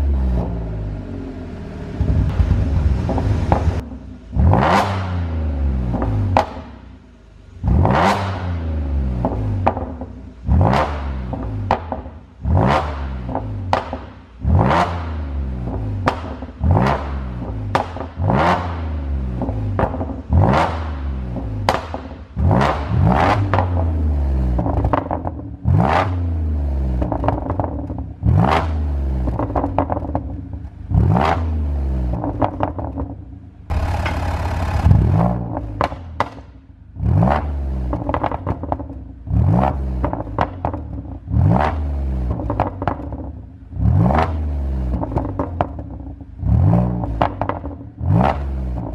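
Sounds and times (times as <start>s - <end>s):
car engine revving: 0.0s - 48.9s
exhaust pops and crackles: 2.0s - 4.0s, 13.3s - 14.2s, 15.7s - 17.1s, 17.7s - 18.2s, 19.4s - 23.8s, 24.6s - 25.5s, 27.0s - 28.2s, 29.2s - 30.7s, 32.1s - 36.6s, 37.9s - 41.2s, 42.3s - 43.4s, 44.9s - 46.2s, 47.0s - 47.9s.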